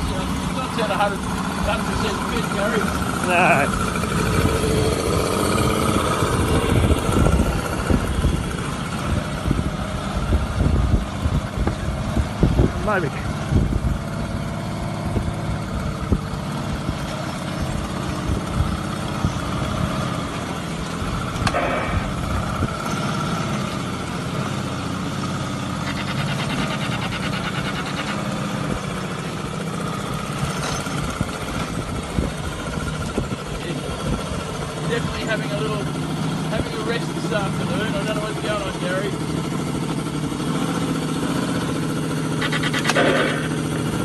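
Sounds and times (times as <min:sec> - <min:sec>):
engine idling: 0:00.0 - 0:44.0
sharp click: 0:42.4 - 0:43.6.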